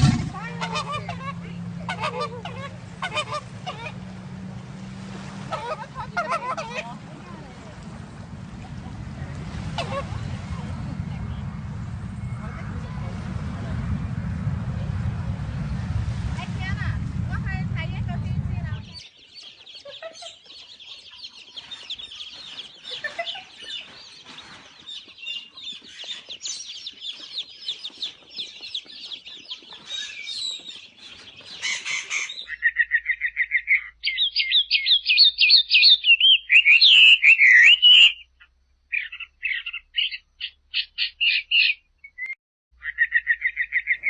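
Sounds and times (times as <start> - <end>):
birds chirping in chorus: 18.6 - 44.0.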